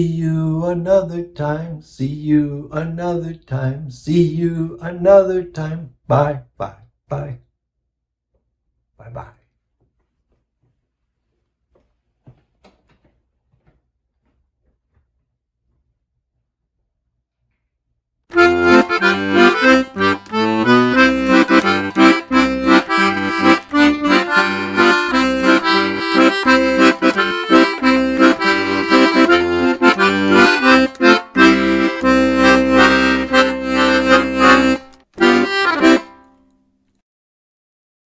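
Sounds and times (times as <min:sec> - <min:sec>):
accordion music: 0:18.3 - 0:36.3.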